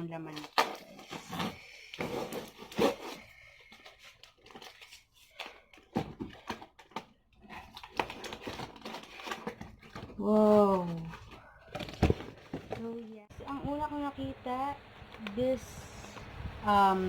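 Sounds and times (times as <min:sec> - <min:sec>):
packaging crinkling and tearing: 0:00.3 - 0:12.5.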